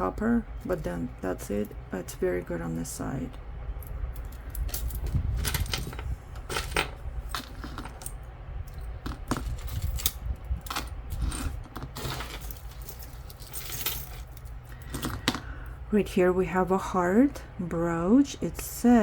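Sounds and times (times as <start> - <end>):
metal jewelry clinking: 3.8 - 15.4.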